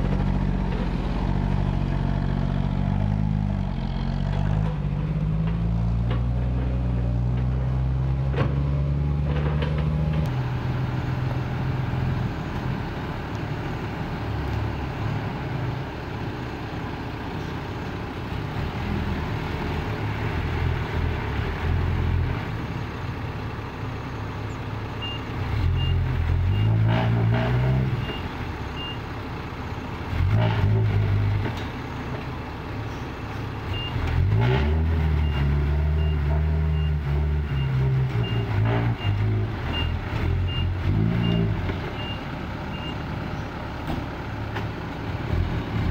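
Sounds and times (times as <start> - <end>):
excavator diesel engine under load: 0.0 - 45.9
reversing alarm beeps: 35.2 - 43.0.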